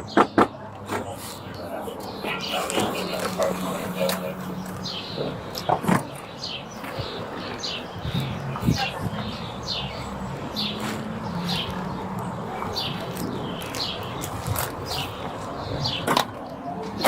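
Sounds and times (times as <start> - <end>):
bird chirping: 1.0 - 16.8.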